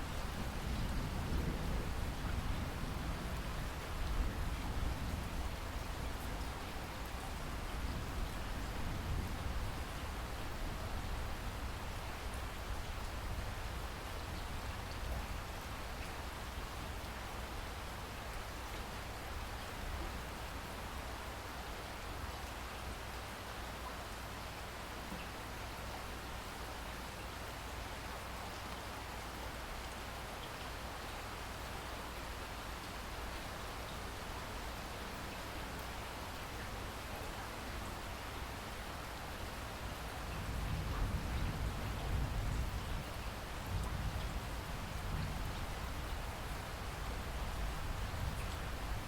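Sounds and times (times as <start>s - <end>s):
steady rain hiss: 0.0s - 49.0s
continuous low rumble: 29.8s - 49.0s.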